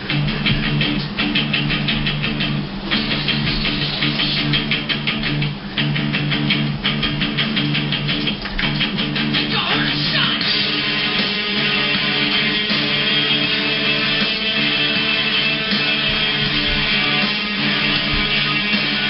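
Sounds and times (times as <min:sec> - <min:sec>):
hard rock electric guitar riff: 0:00.0 - 0:19.0.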